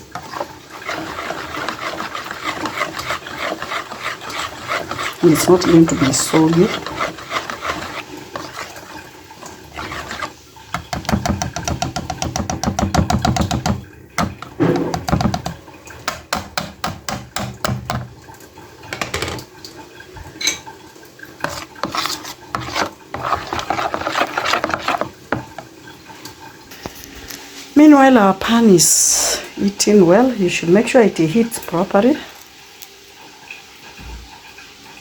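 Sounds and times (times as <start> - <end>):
hand whisk beating batter: 0.0 - 18.1, 21.4 - 25.7
whisk scraping bowl: 0.0 - 18.1, 21.4 - 25.8.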